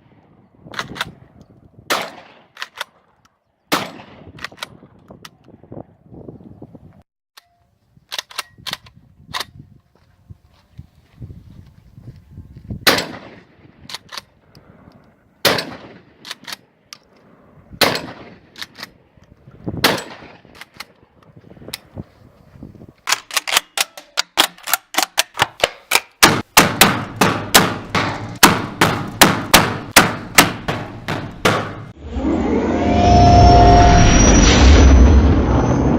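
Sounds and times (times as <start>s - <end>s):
shotgun shots: 1.9s - 2.6s, 3.7s - 4.4s, 12.8s - 13.6s, 15.4s - 16.5s, 17.8s - 18.6s, 19.8s - 20.6s, 26.2s - 31.9s.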